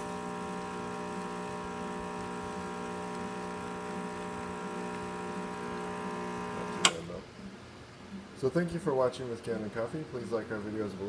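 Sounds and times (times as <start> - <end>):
espresso machine pump humming: 0.0 - 6.9.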